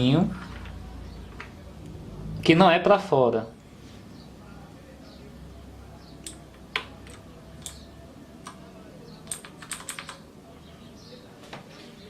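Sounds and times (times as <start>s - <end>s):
mechanical keyboard clicking: 6.2s - 7.8s, 9.2s - 10.2s.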